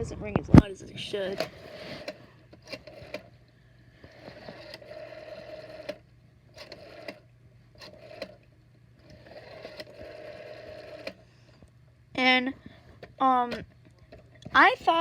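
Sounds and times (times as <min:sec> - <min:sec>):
rotary telephone dial whirring: 0:01.2 - 0:03.4, 0:04.0 - 0:11.3
rotary dial clicks: 0:06.6 - 0:08.4, 0:09.0 - 0:11.2.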